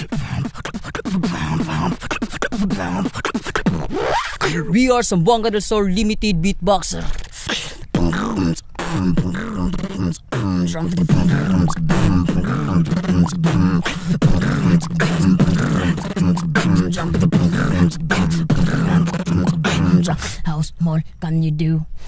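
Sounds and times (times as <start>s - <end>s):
beatboxed kick and snare hits: 0.0s - 4.5s, 11.1s - 19.8s
wavering high vocal line: 0.0s - 5.2s, 7.0s - 20.6s.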